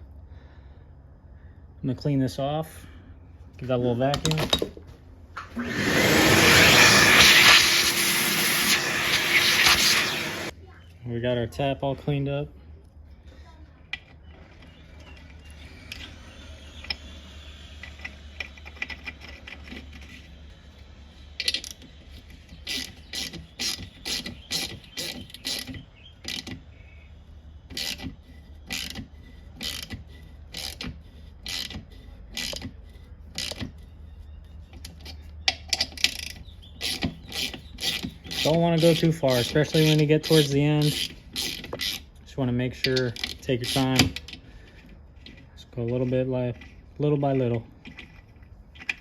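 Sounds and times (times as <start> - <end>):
tap scraping threads in metal: 21.4 - 26.6, 34.7 - 42.0.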